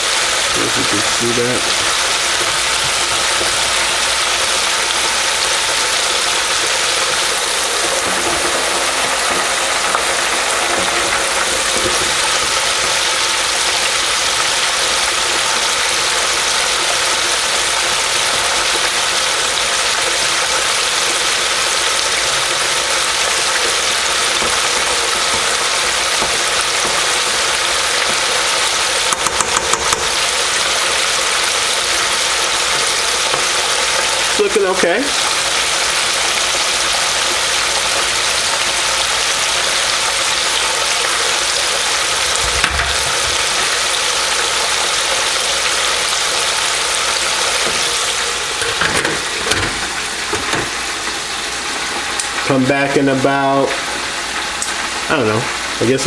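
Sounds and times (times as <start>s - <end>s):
oil bubbling in deep fryer: 0.0s - 56.0s.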